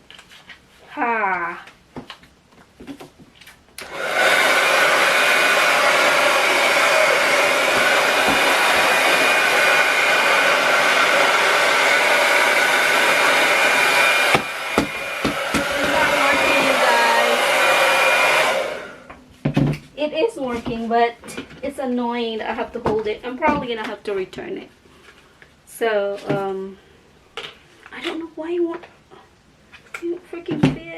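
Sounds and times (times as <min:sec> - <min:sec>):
hair dryer clicks: 0:03.8 - 0:18.8
hair dryer running: 0:03.8 - 0:19.2.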